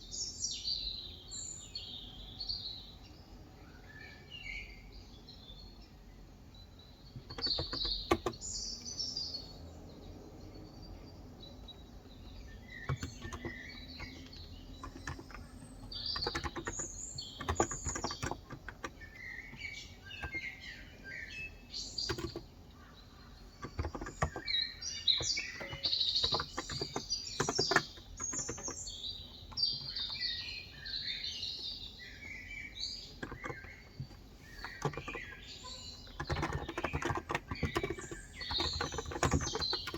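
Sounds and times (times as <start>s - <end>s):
birds chirping and singing: 0.0s - 39.9s
keyboard typing: 7.2s - 8.6s, 12.0s - 22.6s, 23.3s - 30.6s, 33.0s - 39.9s.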